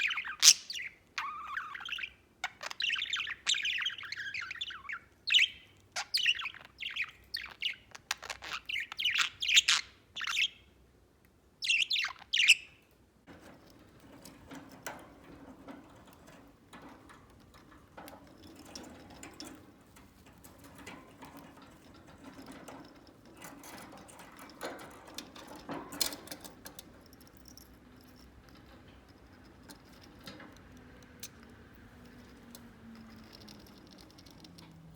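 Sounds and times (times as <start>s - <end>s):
faint clicks and scratches: 13.3s - 34.9s.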